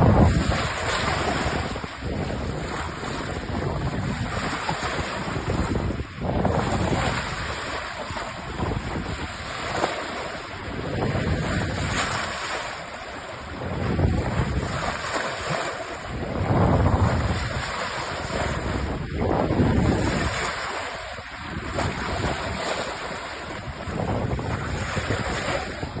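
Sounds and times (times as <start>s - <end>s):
sea waves rushing: 0.0s - 26.0s
wind buffeting microphone: 0.0s - 26.0s.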